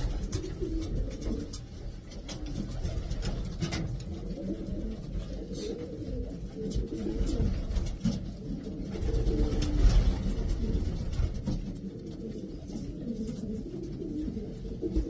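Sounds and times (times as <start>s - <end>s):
pigeons cooing: 0.0s - 15.0s.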